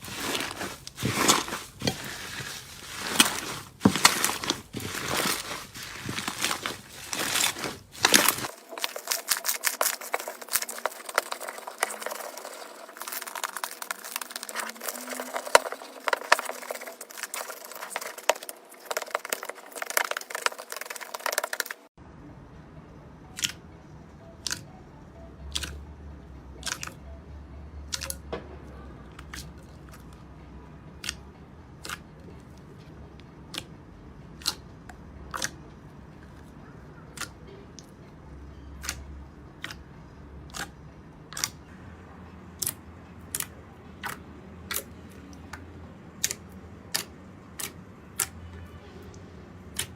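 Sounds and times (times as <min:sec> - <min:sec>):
slime crackling by hand: 0:00.0 - 0:21.9.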